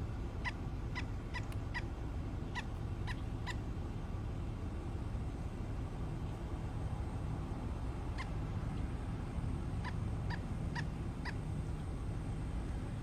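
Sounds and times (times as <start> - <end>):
steady low rumble: 0.0 - 13.0
bird high-pitched calls: 0.4 - 1.9, 2.5 - 3.6.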